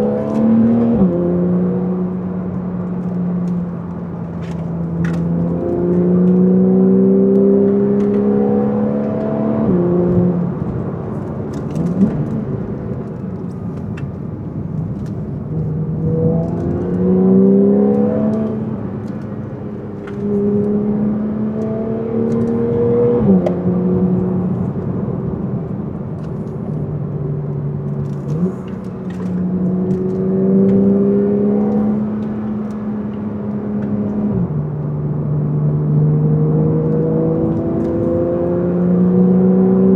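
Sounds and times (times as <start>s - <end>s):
car engine accelerating through gears: 0.0s - 39.9s.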